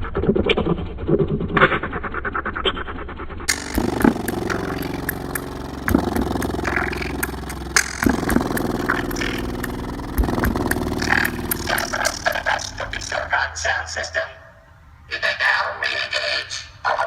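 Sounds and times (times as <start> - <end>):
sharp rattling clicks: 3.5 - 13.2
heavy subwoofer bass: 3.5 - 13.4.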